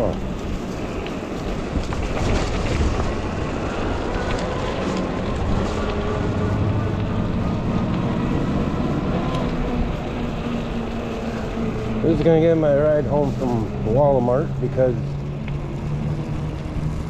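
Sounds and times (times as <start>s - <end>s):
tyres rumbling on road: 0.0s - 17.0s
wind on microphone: 0.0s - 17.0s.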